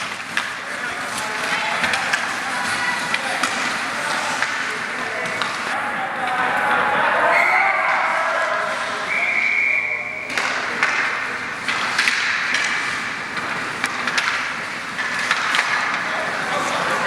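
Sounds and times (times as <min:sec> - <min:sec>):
hockey sticks and puck clacking: 0:00.0 - 0:06.6, 0:08.6 - 0:17.0
background chatter: 0:00.0 - 0:17.0
referee's whistle: 0:09.0 - 0:10.7.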